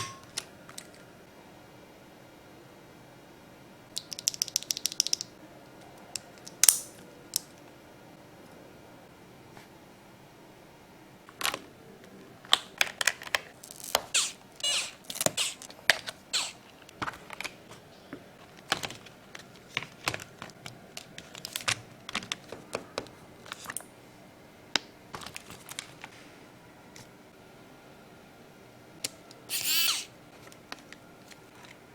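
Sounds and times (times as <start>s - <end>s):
packaging rustling: 18.4s - 22.7s.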